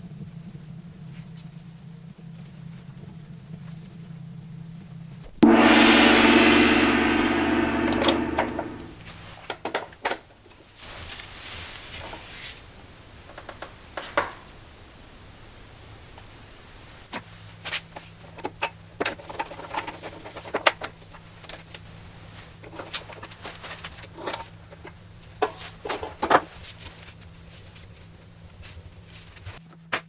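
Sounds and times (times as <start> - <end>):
steady low hum: 5.4 - 9.0.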